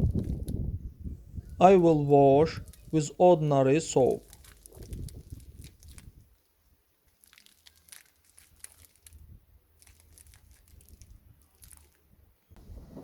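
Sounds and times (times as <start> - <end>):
seat belt webbing crinkling: 4.1 - 6.2, 7.1 - 12.0.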